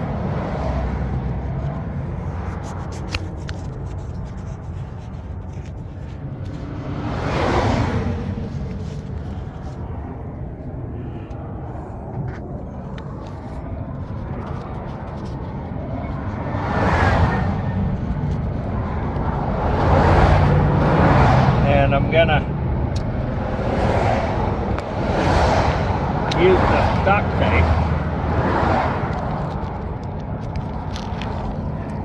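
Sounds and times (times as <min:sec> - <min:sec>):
road traffic rumble: 0:00.0 - 0:32.0
vehicle passing by: 0:00.0 - 0:32.0.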